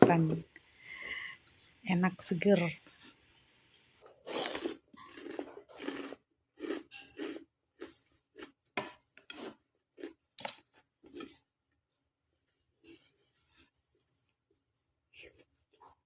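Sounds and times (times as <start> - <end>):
person chewing crunchy vegetables: 4.0 - 11.5.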